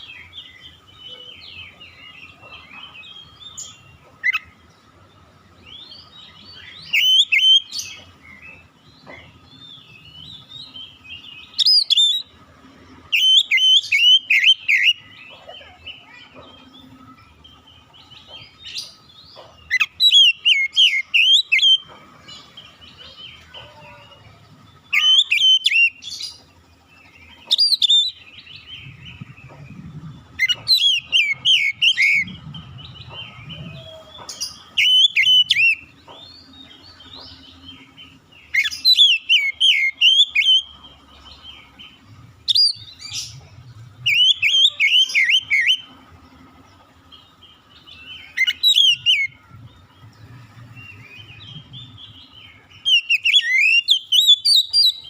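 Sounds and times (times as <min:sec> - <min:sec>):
bird singing whistled notes: 0:05.6 - 0:08.7, 0:09.5 - 0:12.3, 0:13.1 - 0:15.2, 0:16.7 - 0:22.0, 0:24.8 - 0:26.4, 0:27.1 - 0:43.4, 0:44.0 - 0:45.9, 0:47.1 - 0:49.5, 0:50.7 - 0:55.0.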